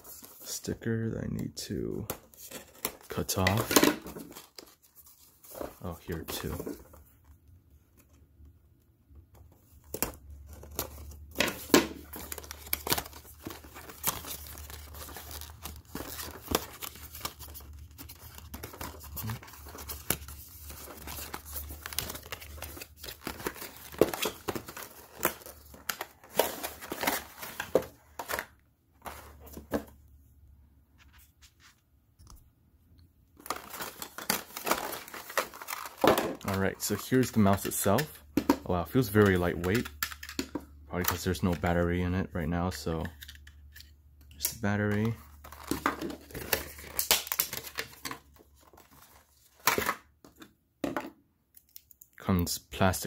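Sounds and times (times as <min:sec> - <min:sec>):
packaging tearing and crinkling: 0:44.9 - 0:49.8.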